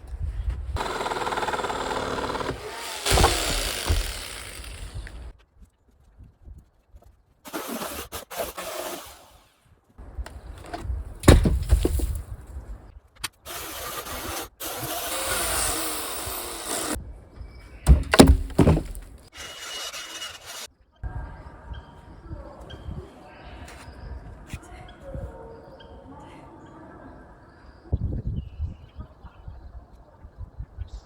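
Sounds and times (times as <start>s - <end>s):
heavy wooden thuds and knocks: 3.0s - 5.0s, 10.6s - 12.3s, 17.9s - 19.3s.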